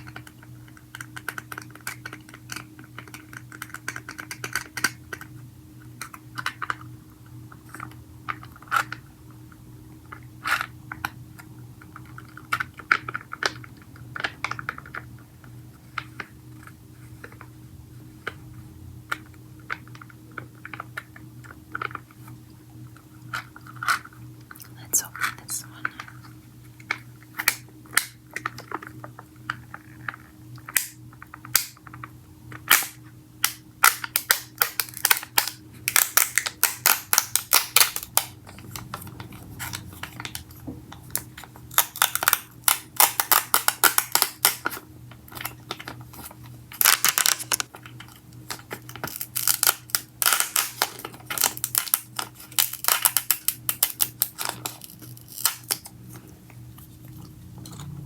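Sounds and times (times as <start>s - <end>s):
packaging crinkling: 23.3s - 57.9s.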